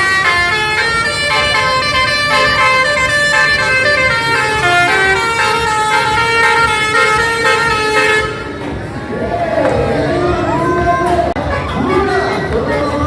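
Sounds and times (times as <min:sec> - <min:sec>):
musical air horn melody: 0:00.0 - 0:08.6.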